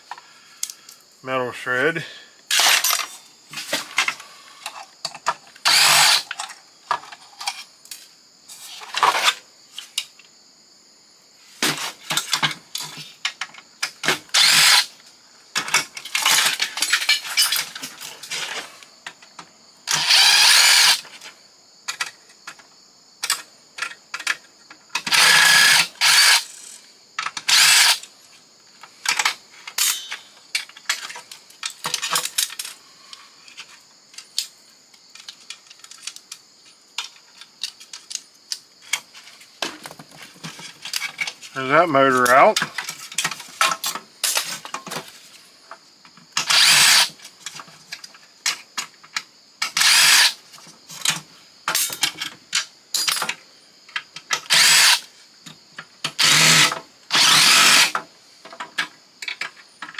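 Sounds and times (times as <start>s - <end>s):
plastic and metal parts clattering: 2.5s - 7.7s, 11.6s - 14.9s, 15.6s - 18.7s, 25.0s - 28.1s, 29.0s - 32.8s, 35.2s - 36.4s, 38.9s - 41.5s, 42.2s - 45.4s, 46.4s - 53.4s, 54.2s - 55.1s, 55.8s - 59.9s
power drill running: 5.7s - 6.2s, 14.4s - 14.8s, 19.9s - 21.0s, 25.1s - 26.5s, 27.5s - 28.0s, 46.5s - 47.1s, 54.5s - 55.0s, 56.2s - 57.9s.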